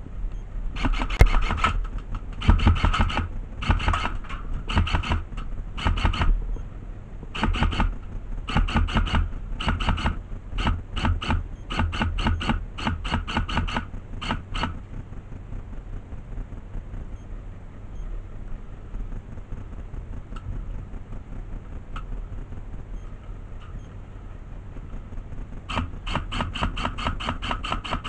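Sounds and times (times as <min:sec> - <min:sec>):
low wind rumble: 0:00.0 - 0:28.0
airsoft gun firing bursts: 0:00.8 - 0:06.4, 0:07.3 - 0:14.8, 0:25.7 - 0:28.0.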